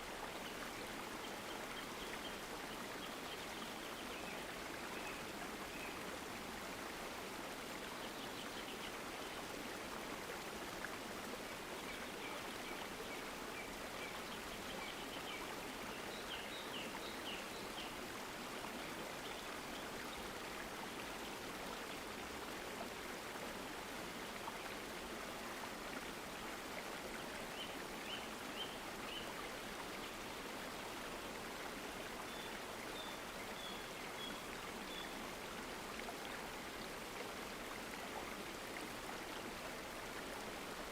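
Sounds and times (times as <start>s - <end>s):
stream babbling: 0.0s - 40.9s.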